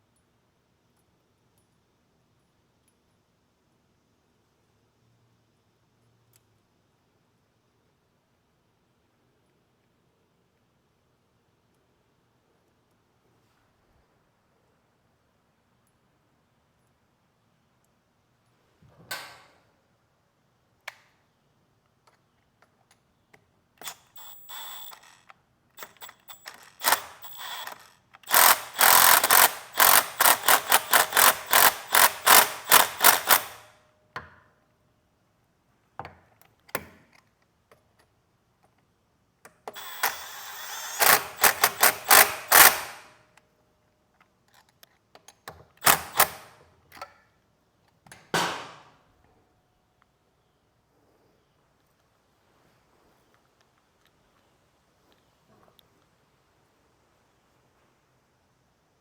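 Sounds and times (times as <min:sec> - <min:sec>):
hand ratchet clicking: 0:23.8 - 0:33.7, 0:39.7 - 0:43.1, 0:45.8 - 0:46.5.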